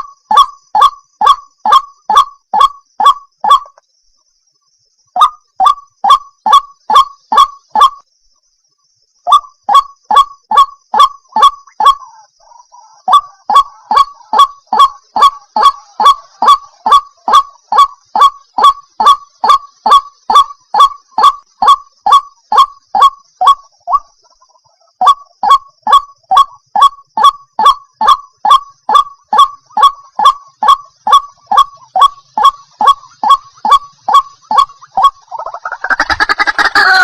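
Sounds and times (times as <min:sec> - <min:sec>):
waterhen honking calls: 0:09.7 - 0:24.1, 0:25.0 - 0:37.0.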